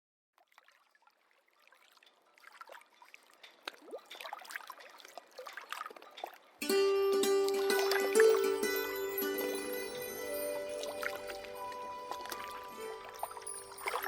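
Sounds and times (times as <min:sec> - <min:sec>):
water trickling and dripping: 0:00.4 - 0:14.0
music: 0:06.6 - 0:14.0.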